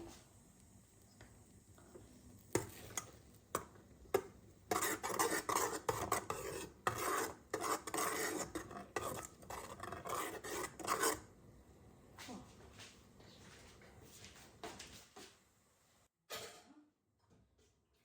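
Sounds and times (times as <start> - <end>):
utensil scraping and stirring pan: 1.2 - 11.4.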